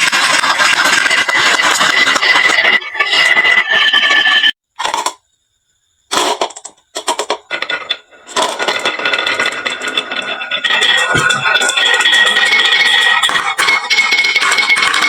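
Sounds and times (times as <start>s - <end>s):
marbles rattling down wooden slope: 0.0s - 5.2s, 6.1s - 15.0s.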